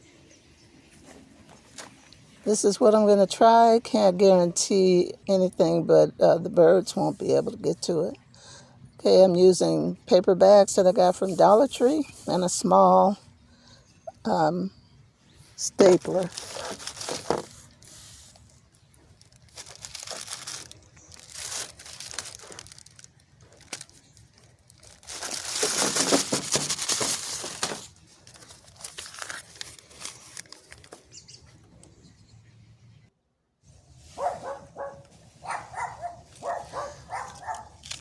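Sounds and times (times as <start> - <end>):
paper bag rustling: 15.6 - 31.0.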